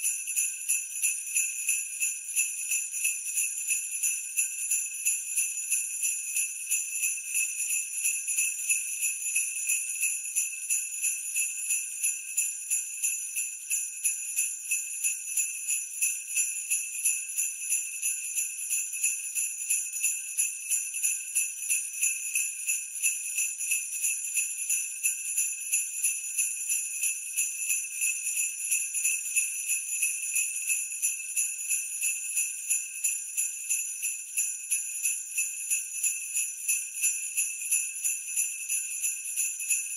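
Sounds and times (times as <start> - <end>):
sleigh bells jingling: 0.0 - 39.9.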